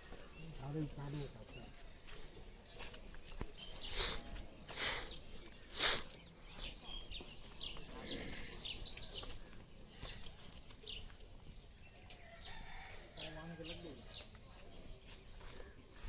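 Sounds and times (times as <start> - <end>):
small birds chirping: 0.0 - 16.0
loud hissing bursts: 3.9 - 6.1.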